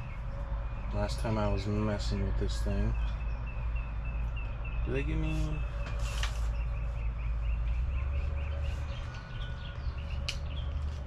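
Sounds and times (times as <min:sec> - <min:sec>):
bird chirping rapidly: 0:00.0 - 0:11.0.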